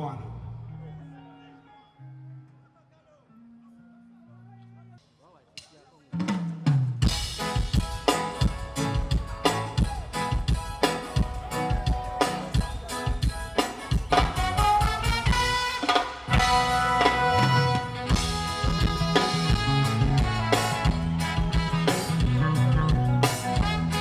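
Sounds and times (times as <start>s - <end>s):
live band playing instrumental: 6.2s - 24.0s.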